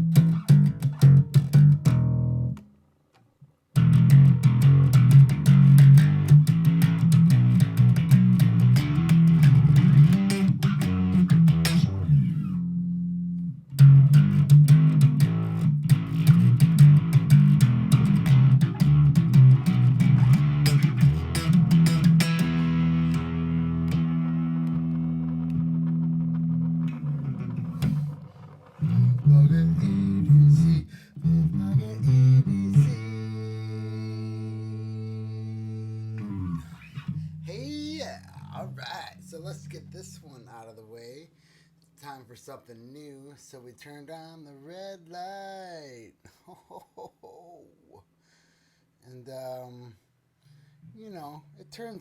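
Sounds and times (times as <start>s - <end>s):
bass guitar plucked notes: 0.0s - 2.7s, 3.8s - 40.7s.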